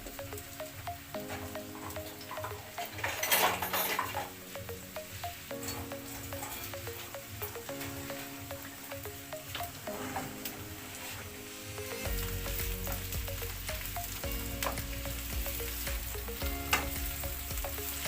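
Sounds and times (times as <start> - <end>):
mushrooms sizzling in oil: 10.4 - 18.0.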